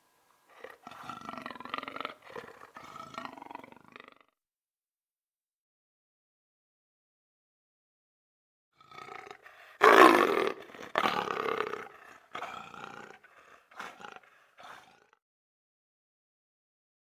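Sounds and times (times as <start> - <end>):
leopard roaring: 0.5 - 4.2, 9.0 - 15.0.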